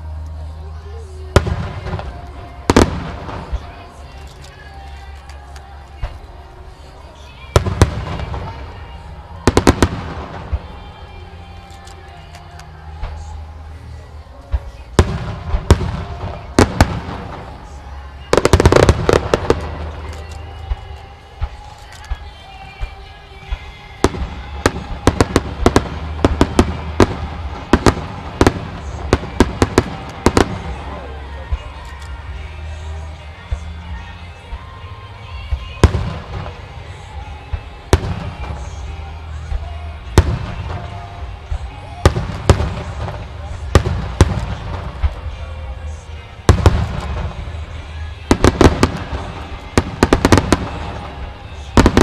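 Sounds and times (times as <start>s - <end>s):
continuous low rumble: 0.0s - 52.0s
firework shells bursting: 0.0s - 52.0s.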